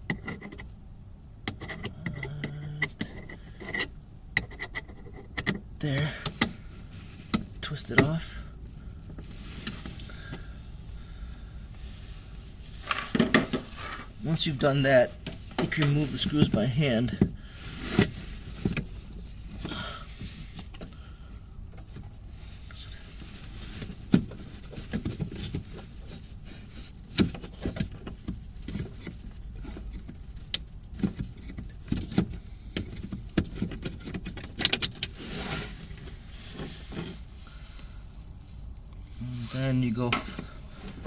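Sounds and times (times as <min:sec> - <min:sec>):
clicks and knocks of metal and plastic: 0:01.4 - 0:06.5, 0:12.9 - 0:14.1, 0:27.1 - 0:35.1
rustling: 0:06.3 - 0:20.9, 0:21.7 - 0:41.0.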